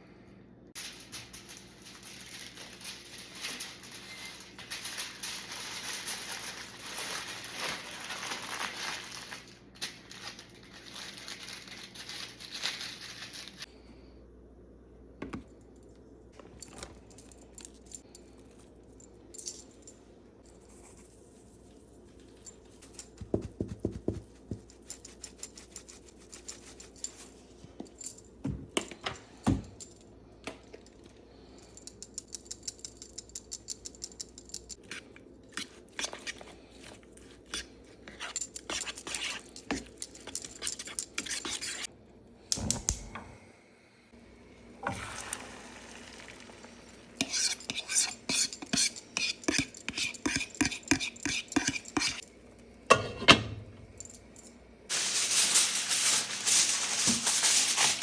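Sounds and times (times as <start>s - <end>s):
stirring in a bowl: 34.7s - 41.9s, 46.2s - 52.3s
kitchen utensils clinking on dishes: 47.2s - 52.2s.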